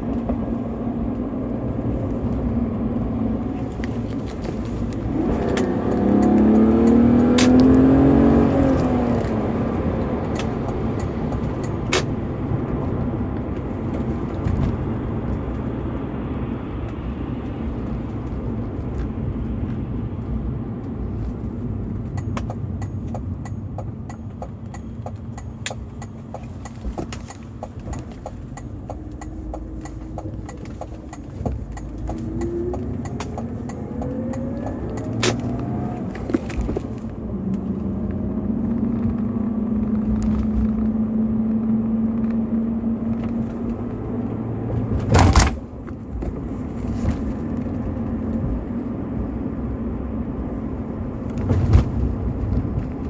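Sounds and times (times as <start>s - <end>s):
car engine running: 0.0s - 53.0s.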